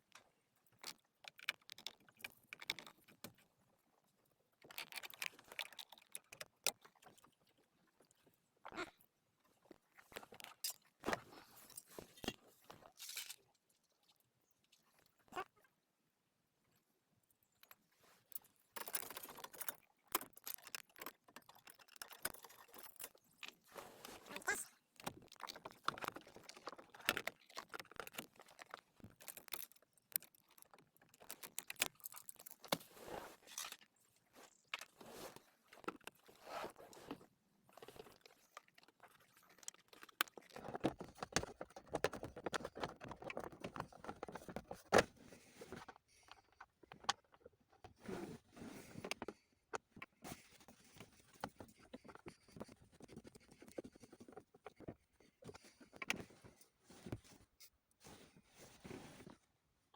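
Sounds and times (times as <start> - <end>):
rustling and scraping: 10.0 - 13.4, 22.2 - 38.4, 40.6 - 59.6.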